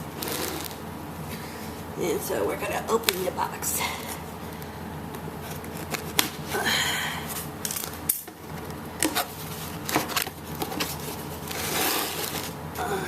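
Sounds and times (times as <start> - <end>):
packaging rustle: 7.7 - 12.6.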